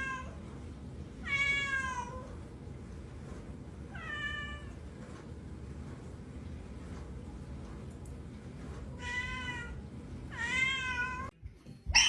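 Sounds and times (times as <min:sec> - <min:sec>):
cat meowing: 0:09.0 - 0:11.3.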